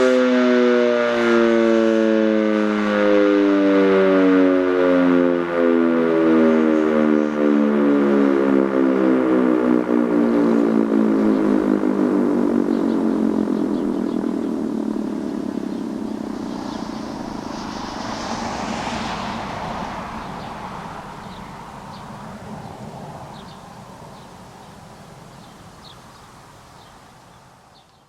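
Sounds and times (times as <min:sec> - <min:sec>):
tornado siren winding down: 0:00.0 - 0:24.4
rushing swell: 0:10.5 - 0:24.2.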